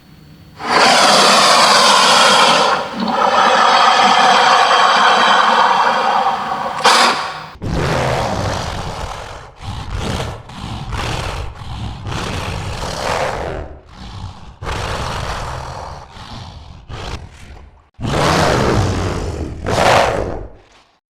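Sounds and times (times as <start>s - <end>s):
rasping creature growls and roars: 0.6s - 7.6s.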